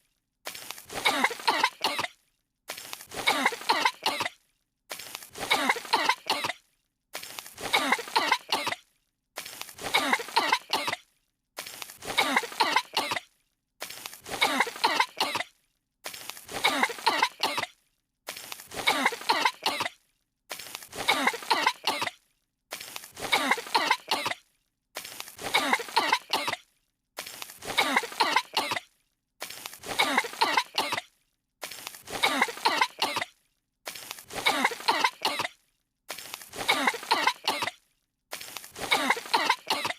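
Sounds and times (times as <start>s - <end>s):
cartoon characters coughing: 0.9s - 2.2s, 3.1s - 4.4s, 5.4s - 6.6s, 7.6s - 8.8s, 9.8s - 11.1s, 12.0s - 13.3s, 14.2s - 15.5s, 16.5s - 17.7s, 18.7s - 20.0s, 20.9s - 22.2s, 23.2s - 24.4s, 25.4s - 26.6s, 27.6s - 28.9s, 29.8s - 31.1s, 32.1s - 33.3s, 34.3s - 35.6s, 36.5s - 37.8s, 38.7s - 39.9s.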